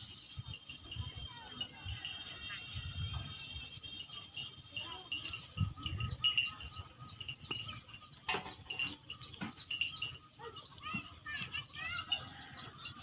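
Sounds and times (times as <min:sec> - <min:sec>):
high-pitched chirping notes: 0:04.0 - 0:10.6.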